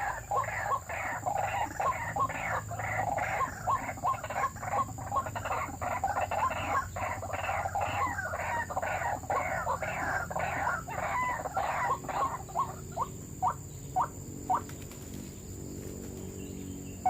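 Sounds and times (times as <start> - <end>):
birds croaking calls: 0.0 - 17.0.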